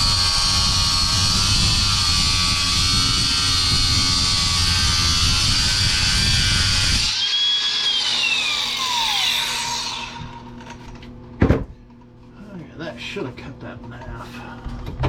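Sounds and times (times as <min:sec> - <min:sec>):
cut-off wheel grinding steel: 0:00.0 - 0:10.9
wheel whine spinning down: 0:00.0 - 0:11.0.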